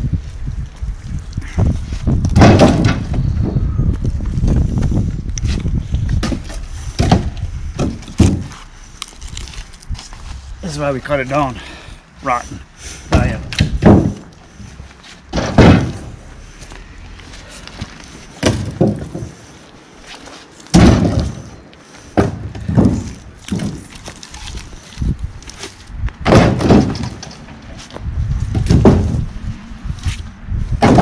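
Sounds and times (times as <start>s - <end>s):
heavy wooden thuds from logs: 1.5s - 10.3s, 12.5s - 16.3s, 17.3s - 19.5s, 20.7s - 29.4s, 30.7s - 31.0s.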